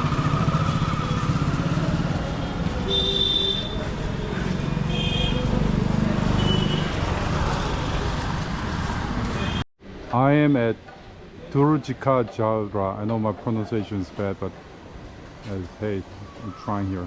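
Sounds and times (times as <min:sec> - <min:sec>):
motorcycle engines running: 0:00.0 - 0:09.6
short horn beeps: 0:02.9 - 0:03.8.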